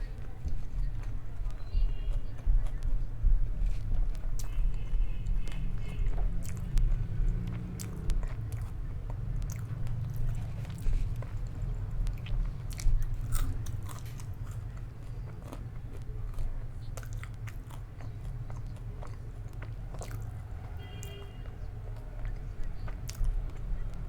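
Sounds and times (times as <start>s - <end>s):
person chewing crunchy food: 0.2s - 24.0s
wet mouth clicks: 5.5s - 14.8s.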